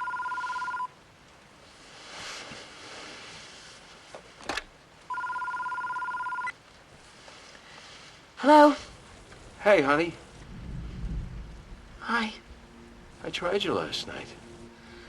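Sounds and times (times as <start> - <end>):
telephone ringing with two-tone warble: 0.0 - 1.0, 5.1 - 6.6.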